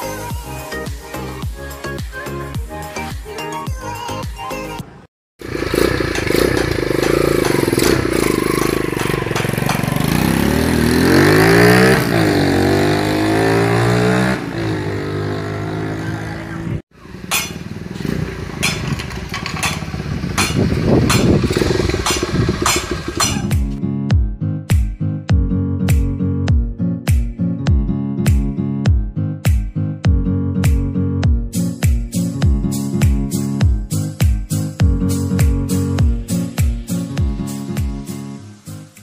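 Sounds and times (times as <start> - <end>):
motorcycle engine revving: 5.4 - 23.8.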